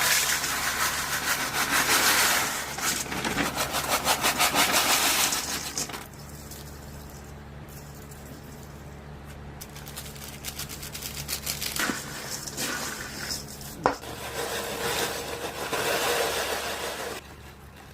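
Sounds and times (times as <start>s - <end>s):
steady low hum: 0.0s - 17.9s
utensil scraping a pan: 11.8s - 17.2s.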